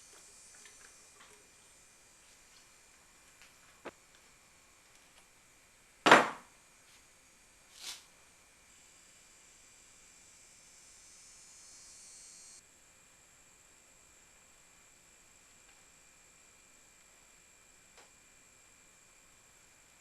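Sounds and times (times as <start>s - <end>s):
faint high hiss: 0.0s - 5.3s
loud knock: 6.1s - 6.5s.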